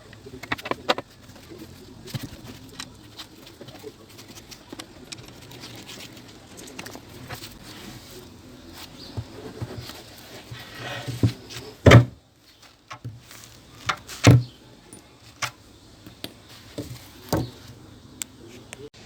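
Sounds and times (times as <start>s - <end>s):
loud knocks: 11.2s - 12.2s.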